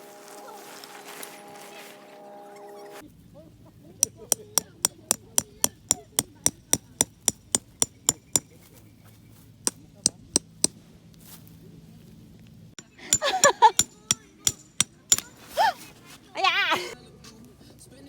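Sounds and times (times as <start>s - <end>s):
metal tent pegs hammered: 4.0s - 8.6s, 9.7s - 10.8s, 13.1s - 15.5s.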